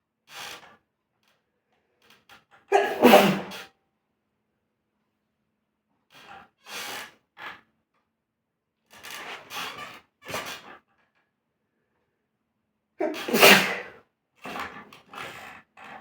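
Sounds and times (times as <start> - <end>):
breathy snorts through the nose: 2.8 - 3.7, 6.2 - 7.6, 13.0 - 16.0.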